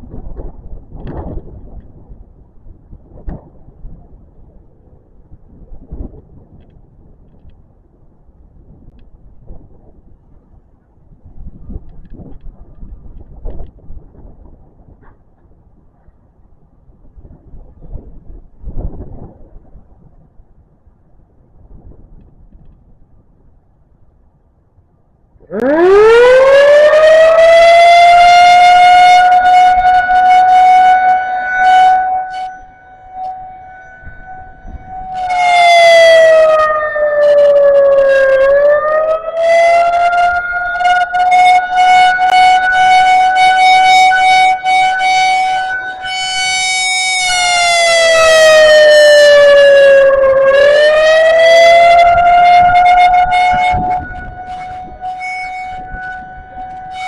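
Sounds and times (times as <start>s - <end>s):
rotating warning siren: 25.4s - 57.0s.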